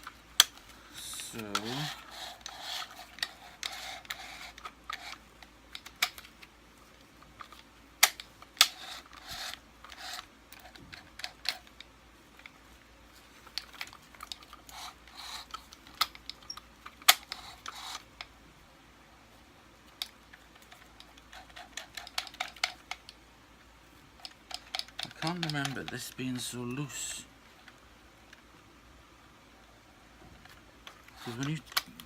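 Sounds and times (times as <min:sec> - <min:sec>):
plastic parts clicking and knocking: 0:00.0 - 0:12.6, 0:13.3 - 0:18.3, 0:19.9 - 0:23.2, 0:23.9 - 0:26.6, 0:30.4 - 0:32.0.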